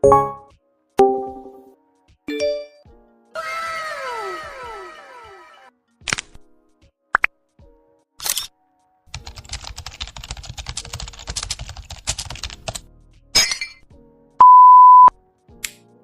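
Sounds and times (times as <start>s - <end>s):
rapid keyboard typing: 9.1s - 12.8s
loud steady beep: 14.4s - 15.1s.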